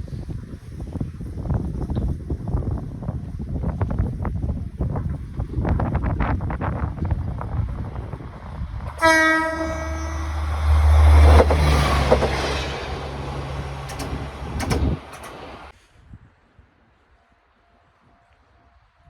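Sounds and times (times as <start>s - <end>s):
train rumbling past: 4.7s - 15.8s
train horn blast: 8.9s - 11.8s
wheel clacks over rail joints: 11.3s - 15.7s.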